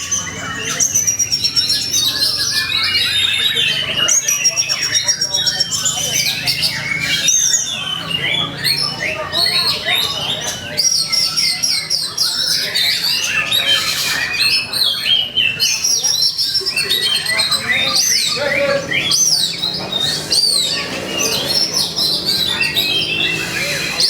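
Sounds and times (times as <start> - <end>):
magpie-robin singing: 0.0 - 24.0.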